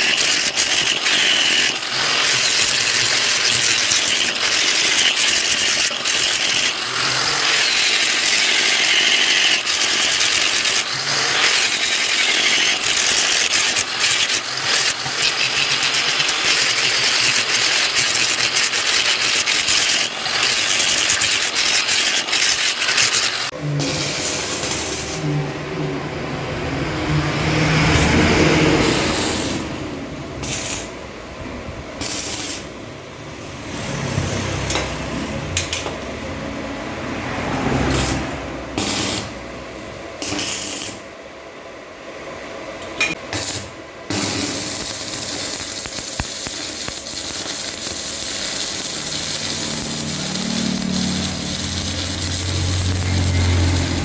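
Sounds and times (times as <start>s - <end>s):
motorised workshop tool running: 0.0s - 31.0s, 43.0s - 54.0s.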